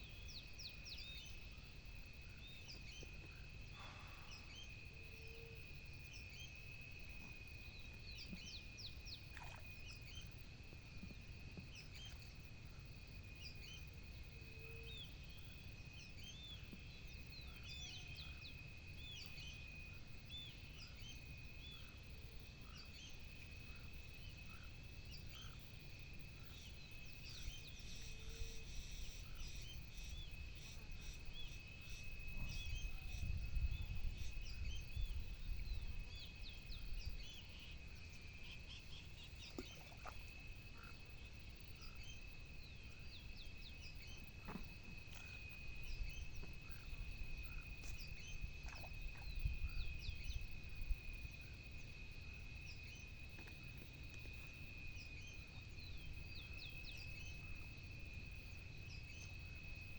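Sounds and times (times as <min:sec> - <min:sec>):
faint low rumble: 0:00.0 - 0:59.9
steady high-pitched hum: 0:00.0 - 0:59.9.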